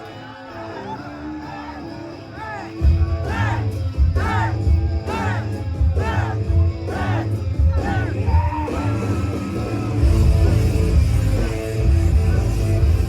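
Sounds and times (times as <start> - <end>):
loud club music: 2.5 - 13.0
heavy bass line: 2.8 - 13.0.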